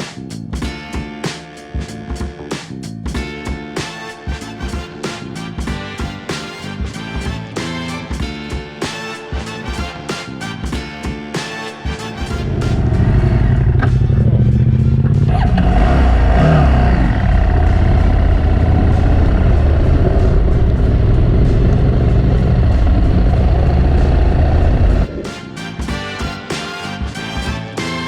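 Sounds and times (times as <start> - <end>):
motorcycle engine running: 12.2 - 25.2.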